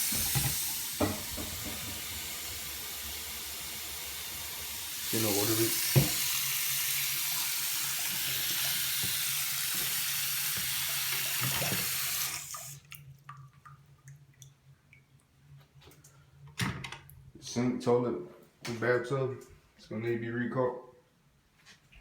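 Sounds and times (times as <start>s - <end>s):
faucet running: 0.0s - 13.0s.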